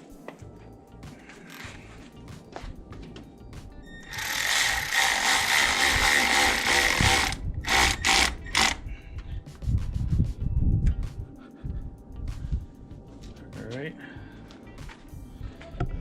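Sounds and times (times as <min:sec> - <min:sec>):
ratchet clicking rapidly: 0:04.0 - 0:08.8.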